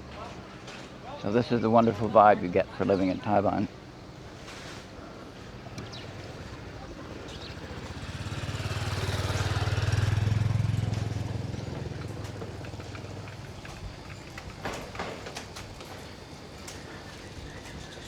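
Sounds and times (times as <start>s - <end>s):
engine passing by: 5.3s - 14.4s.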